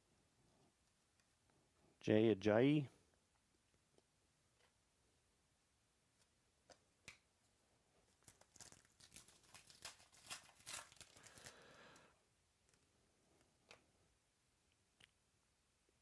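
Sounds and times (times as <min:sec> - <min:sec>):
wrapper clicks: 0:08.2 - 0:11.7
wrapper tearing and crinkling: 0:08.2 - 0:11.7.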